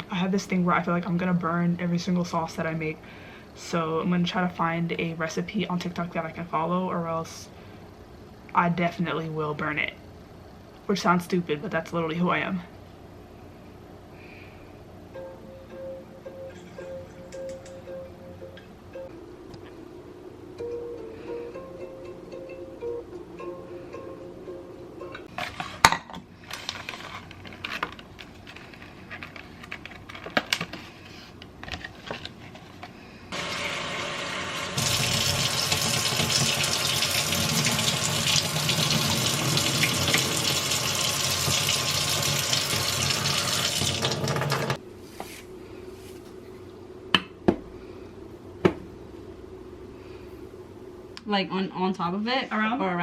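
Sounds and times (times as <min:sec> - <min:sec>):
tap water running into sink: 0:33.4 - 0:44.8.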